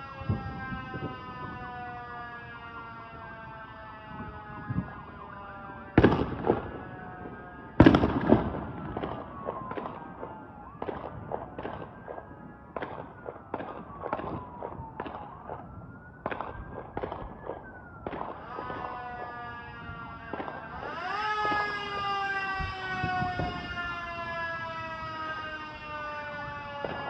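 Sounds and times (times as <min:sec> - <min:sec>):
fireworks bangs: 0:04.1 - 0:23.8, 0:26.4 - 0:27.0
fireworks pops and crackles: 0:05.9 - 0:23.6, 0:26.8 - 0:27.0.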